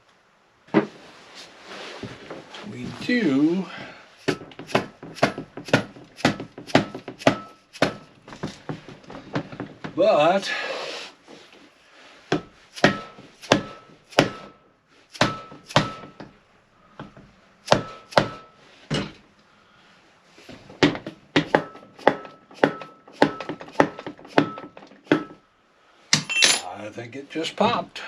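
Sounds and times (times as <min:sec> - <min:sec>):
hammer knocking on metal: 0:04.3 - 0:10.0, 0:15.2 - 0:16.4, 0:17.7 - 0:19.1, 0:20.8 - 0:25.4.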